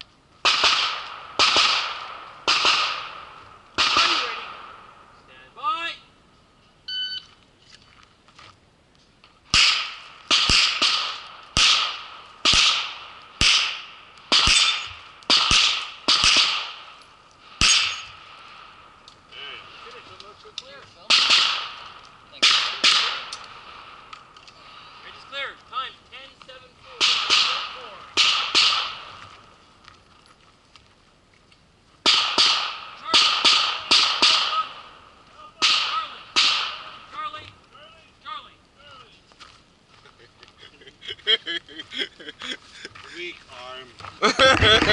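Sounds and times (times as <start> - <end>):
handgun shots echoing: 9.5 - 16.9, 21.1 - 23.9, 27.0 - 29.1, 32.1 - 34.9, 35.6 - 37.0
handgun shots: 27.0 - 29.0.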